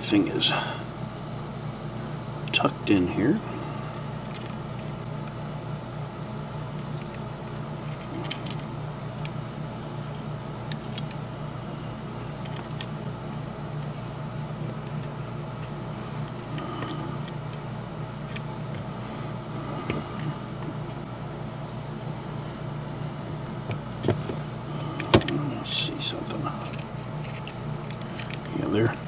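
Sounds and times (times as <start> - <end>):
steady background hum: 0.0 - 29.0
faint clicks of small parts handled: 26.6 - 29.0.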